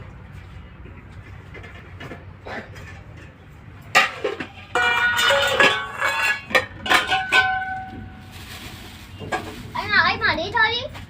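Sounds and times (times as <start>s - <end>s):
metal dishes clinking: 1.6s - 8.2s.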